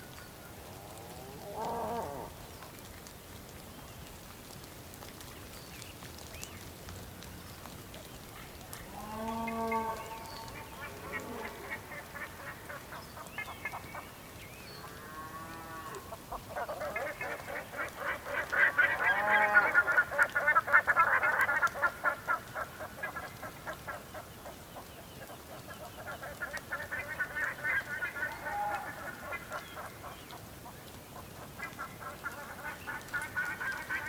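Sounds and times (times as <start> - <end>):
flock of birds chattering: 7.6 - 34.0.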